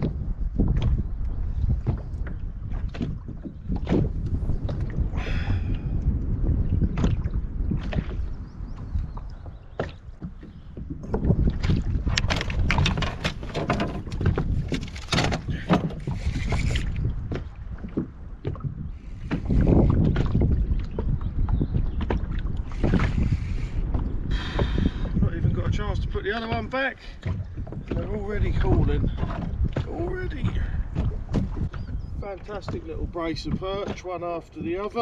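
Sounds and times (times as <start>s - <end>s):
wind buffeting microphone: 0.0s - 35.0s
handling knocks and clicks: 12.1s - 16.1s.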